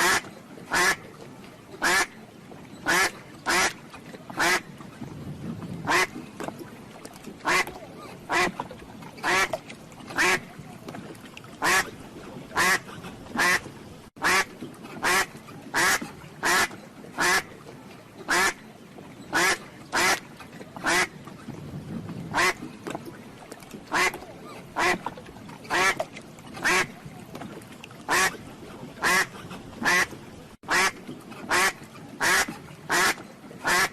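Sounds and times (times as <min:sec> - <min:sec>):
duck quacking: 0:00.0 - 0:01.0, 0:01.8 - 0:02.1, 0:02.9 - 0:03.7, 0:07.4 - 0:07.7, 0:08.3 - 0:08.5, 0:11.6 - 0:11.9, 0:12.6 - 0:12.8, 0:13.4 - 0:17.4, 0:18.3 - 0:18.6, 0:19.4 - 0:20.2, 0:20.8 - 0:21.1, 0:22.4 - 0:22.6, 0:24.8 - 0:25.0, 0:28.1 - 0:28.4, 0:29.0 - 0:30.1, 0:30.7 - 0:33.9.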